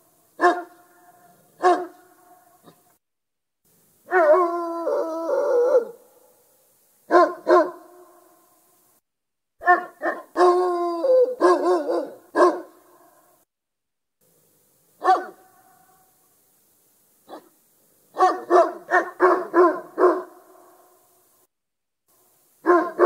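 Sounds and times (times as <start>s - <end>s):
dog barking: 0.4s - 2.9s, 7.1s - 8.1s, 9.6s - 10.6s, 11.4s - 13.2s, 15.0s - 16.0s, 17.3s - 20.9s, 22.6s - 23.0s
dog howling: 4.1s - 6.0s, 9.6s - 12.6s.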